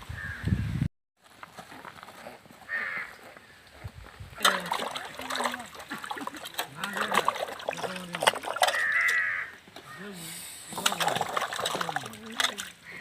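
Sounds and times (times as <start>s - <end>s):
crow cawing: 2.7s - 3.6s, 8.6s - 10.1s
person talking: 4.4s - 8.5s, 9.9s - 12.8s.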